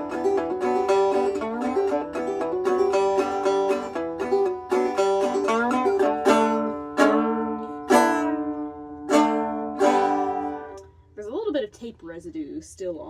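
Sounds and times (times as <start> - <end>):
fretless banjo plucked notes: 0.0 - 11.4.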